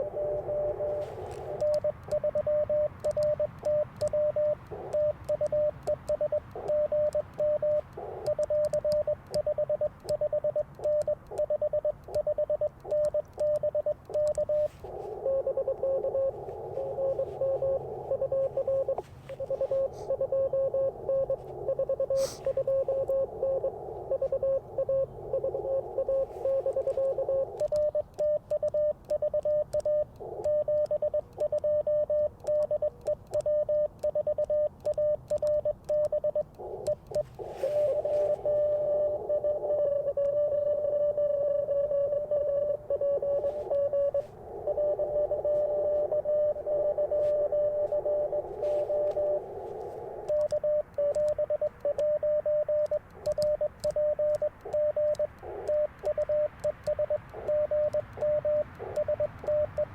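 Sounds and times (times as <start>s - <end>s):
lower-pitched morse code: 0.0s - 59.9s
morse code beeps: 0.0s - 59.9s
receiver hiss: 0.0s - 59.9s
paddle key ticks: 1.3s - 20.2s, 25.8s - 31.8s, 32.4s - 37.5s, 45.6s - 59.9s.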